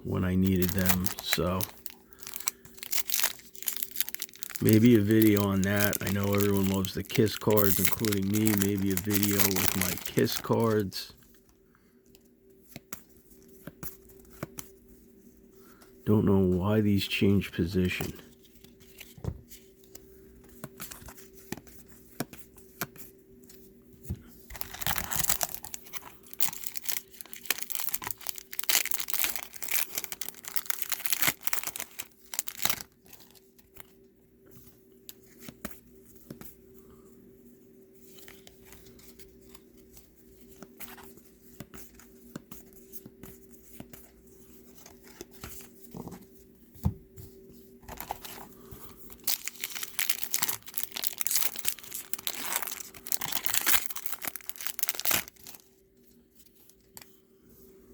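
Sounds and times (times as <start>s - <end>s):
cards rustling and clicking: 0.2s - 11.0s, 24.5s - 33.9s, 47.9s - 55.7s
wrapper tearing and crinkling: 0.4s - 11.0s, 24.5s - 33.4s, 49.1s - 55.7s.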